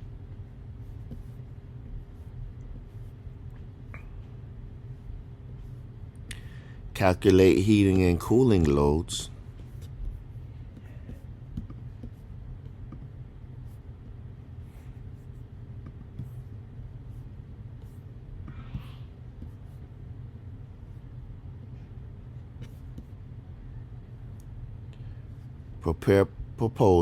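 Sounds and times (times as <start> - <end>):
low background hum: 0.0 - 27.0.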